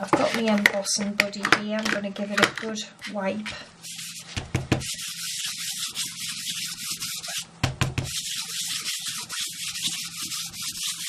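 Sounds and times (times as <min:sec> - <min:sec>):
pouch rubbing over cardstock: 0:03.8 - 0:11.0.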